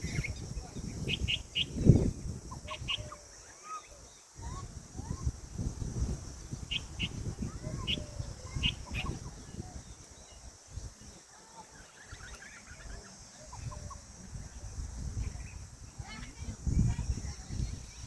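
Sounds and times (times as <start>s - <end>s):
faint chirping calls: 0.0s - 18.0s
peahen calls: 1.0s - 4.6s, 6.7s - 9.7s.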